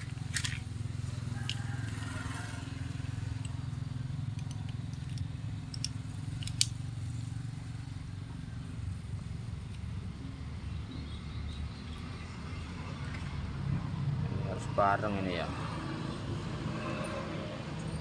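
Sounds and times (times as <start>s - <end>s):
light metallic clicks and taps: 4.3s - 6.8s.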